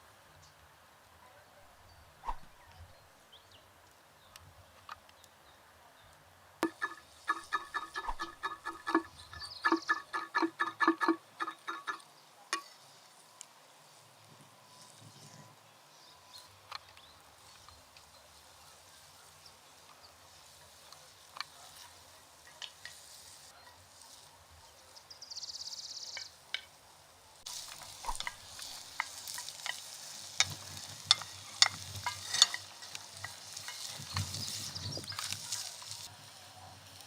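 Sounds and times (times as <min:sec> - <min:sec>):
utensil clicking against pan: 0:06.6 - 0:12.0, 0:27.7 - 0:34.4
food sizzling in a pan: 0:26.2 - 0:37.0.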